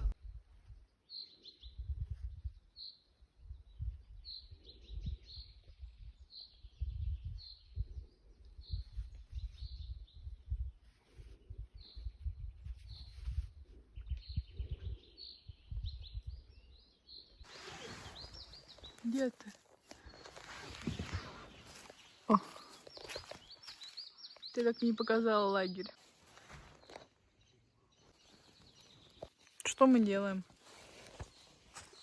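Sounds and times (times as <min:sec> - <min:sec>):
low rumbling on microphone: 0:00.0 - 0:00.4
songbird chirping: 0:00.0 - 0:32.0.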